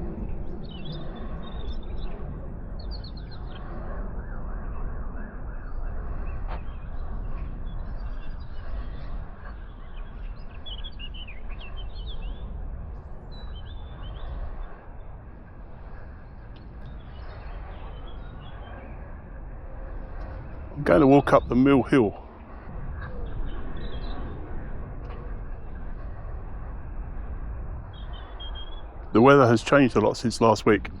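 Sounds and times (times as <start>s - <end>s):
steady low rumble: 0.0s - 31.0s
small birds chirping: 6.3s - 12.5s, 27.9s - 30.7s.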